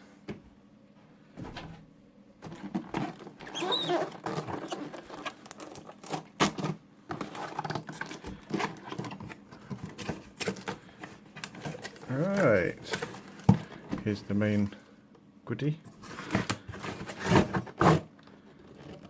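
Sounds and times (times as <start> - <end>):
packing material squeaking: 2.5 - 9.2
cardboard box being handled: 2.5 - 14.2, 15.9 - 18.1.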